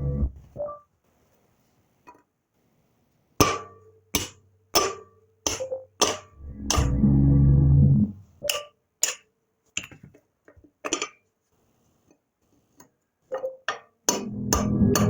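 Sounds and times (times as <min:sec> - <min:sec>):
low steady hum: 0:00.0 - 0:00.6, 0:06.4 - 0:08.4, 0:14.2 - 0:15.0.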